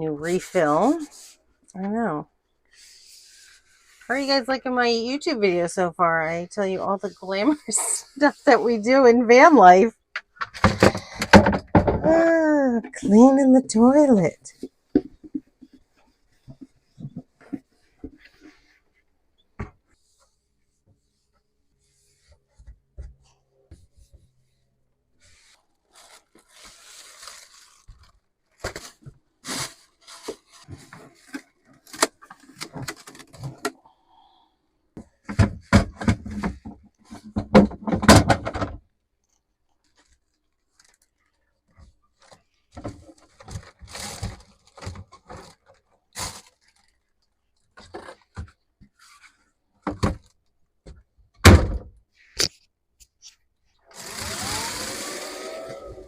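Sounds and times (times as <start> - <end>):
plastic parts knocking and scraping: 10.2 - 18.7, 25.9 - 33.8, 35.0 - 38.8.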